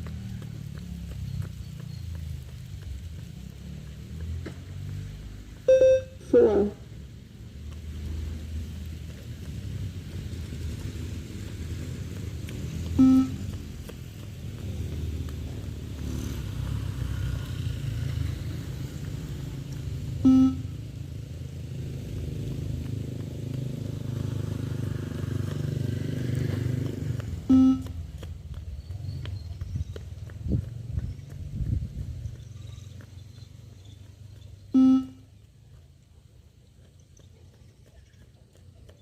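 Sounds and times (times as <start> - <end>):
shuttle beep: 5.7 - 6.7, 13.0 - 13.4, 20.2 - 20.7, 27.5 - 28.0, 34.8 - 35.2.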